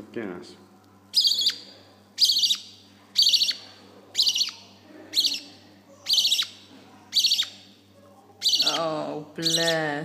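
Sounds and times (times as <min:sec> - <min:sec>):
bird chick chittering call: 0:01.1 - 0:01.6, 0:02.2 - 0:07.7, 0:08.4 - 0:09.8.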